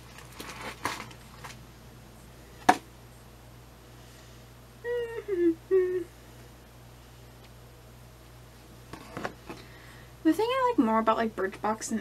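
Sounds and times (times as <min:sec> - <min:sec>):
high-pitched voiced hums: 0:04.8 - 0:06.4.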